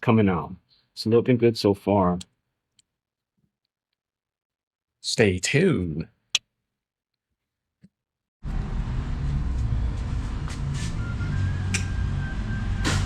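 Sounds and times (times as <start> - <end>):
steady low rumble: 8.4 - 13.0.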